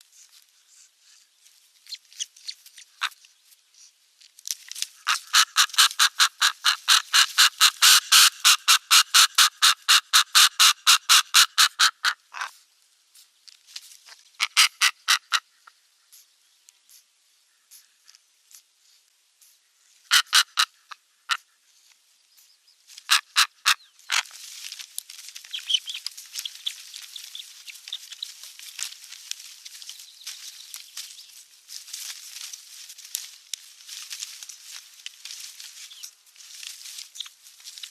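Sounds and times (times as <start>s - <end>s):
steady rustling hiss: 0.0s - 9.6s, 12.2s - 37.9s
rapid high bird calls: 19.5s - 24.3s, 25.4s - 31.6s, 35.6s - 36.2s, 37.0s - 37.5s
bird chirps: 25.4s - 28.6s, 29.8s - 31.4s, 35.8s - 36.2s, 37.0s - 37.4s.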